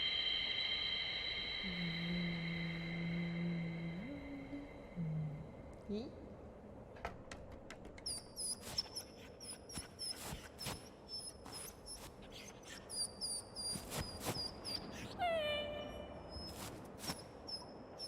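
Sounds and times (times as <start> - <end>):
high-pitched animal squeaks: 8.1 - 16.7.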